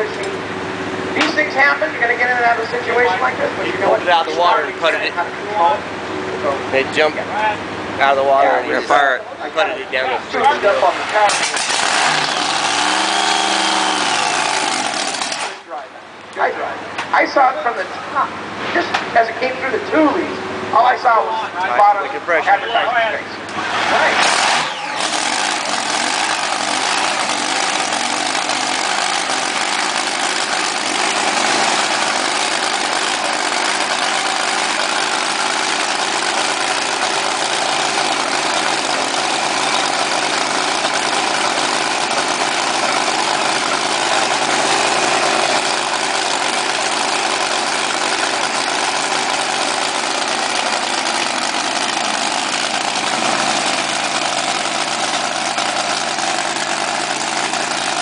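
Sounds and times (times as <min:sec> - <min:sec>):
boat engine idling: 0:10.6 - 0:15.6, 0:24.7 - 0:58.0.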